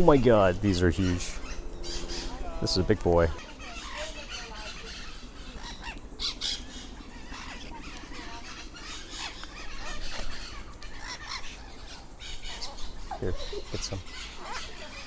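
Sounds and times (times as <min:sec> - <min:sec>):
parrots calling: 0:00.0 - 0:15.0.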